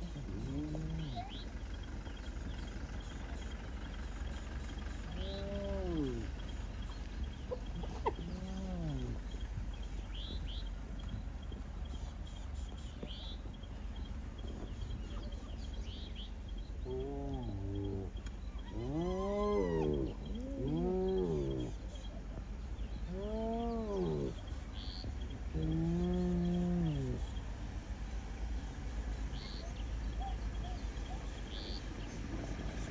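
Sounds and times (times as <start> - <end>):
large animal calling: 0.0 - 1.8, 4.1 - 6.8, 7.4 - 9.4, 16.8 - 21.8, 23.0 - 24.6, 25.5 - 27.3.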